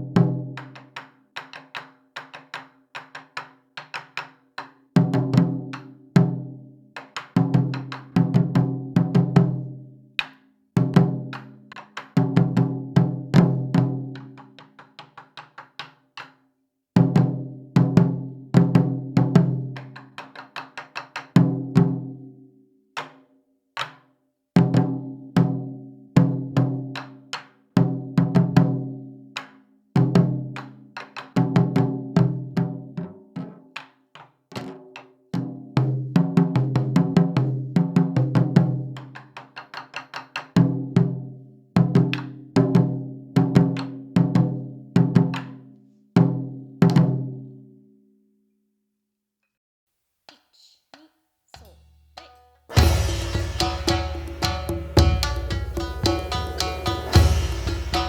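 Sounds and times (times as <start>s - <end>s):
sharp clicking strikes: 51.6s - 58.0s
deep taiko drum strikes: 52.7s - 58.0s.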